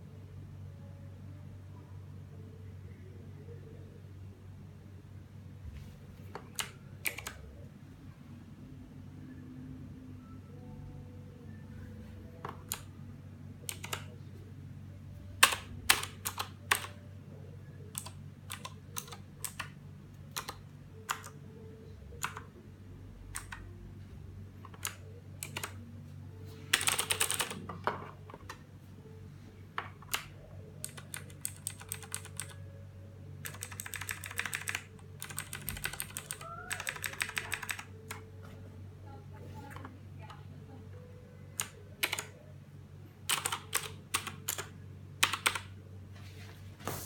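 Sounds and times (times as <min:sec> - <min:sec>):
typing on clicky mechanical keyboard: 0:06.3 - 0:07.4, 0:13.6 - 0:14.1, 0:15.4 - 0:17.0, 0:17.9 - 0:21.4, 0:22.2 - 0:22.5, 0:23.3 - 0:23.7, 0:24.6 - 0:25.8, 0:26.7 - 0:27.7, 0:29.8 - 0:32.6, 0:33.4 - 0:38.2, 0:41.6 - 0:42.4, 0:43.3 - 0:45.7.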